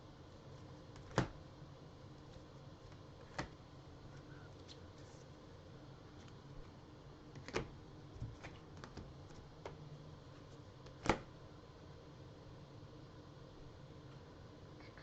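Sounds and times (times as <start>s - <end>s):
cards tapping on a table: 3.2s - 3.5s.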